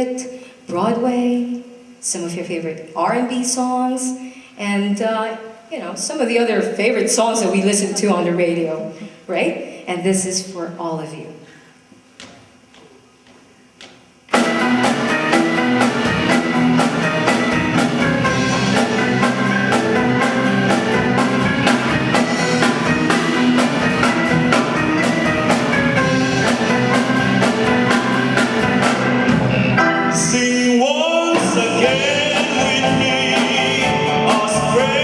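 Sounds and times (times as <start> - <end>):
drum kit steady beat: 12.3 - 35.0
band playing instrumental intro: 14.3 - 35.0.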